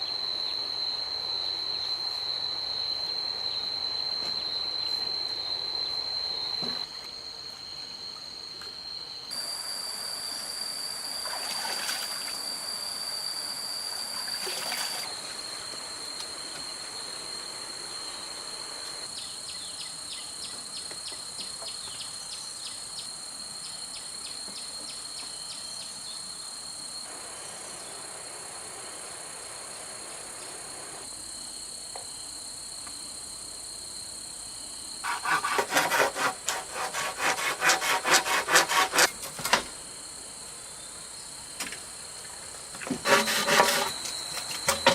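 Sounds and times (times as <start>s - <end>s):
insects shrilling: 0.0s - 19.0s, 35.0s - 39.5s
sawing wood: 35.0s - 39.6s, 42.8s - 44.9s.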